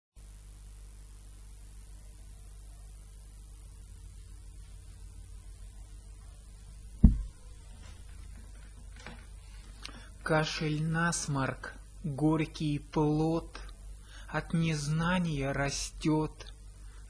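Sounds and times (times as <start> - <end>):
electrical mains hum with hiss: 0.2 - 17.0
loud low thump: 7.0 - 7.4.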